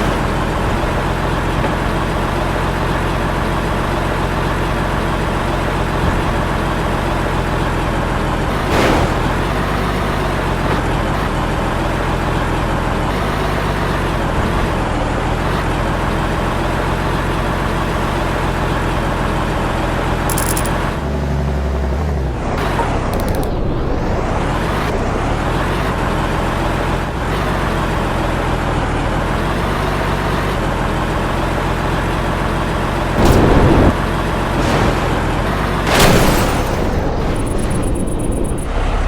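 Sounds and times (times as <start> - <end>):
deep rumble: 33.1 - 39.0.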